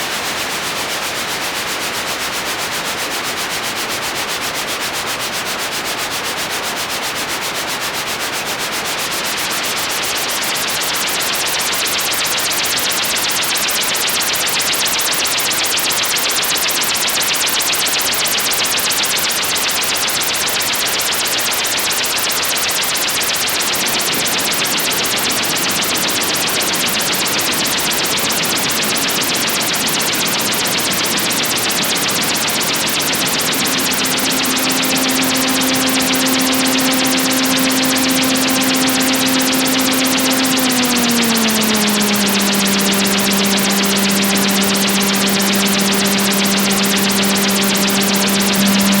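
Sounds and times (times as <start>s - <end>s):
pulsing synthesizer white noise: 22.2s - 49.0s.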